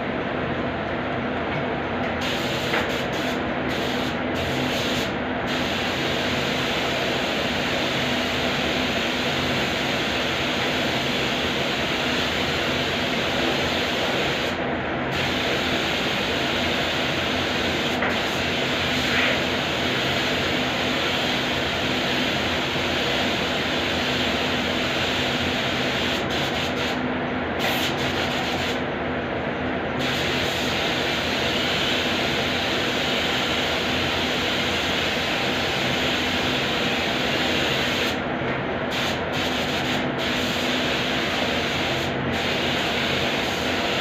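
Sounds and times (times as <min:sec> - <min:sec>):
steady hum: 0:00.0 - 0:44.0.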